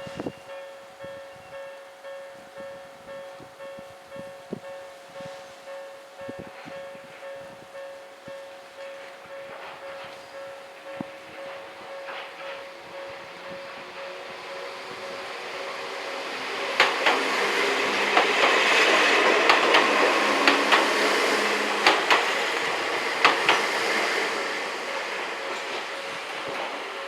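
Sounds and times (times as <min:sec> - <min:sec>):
level crossing warning bell: 0:00.0 - 0:27.0
train wheels clacking over rail joints: 0:16.4 - 0:27.0.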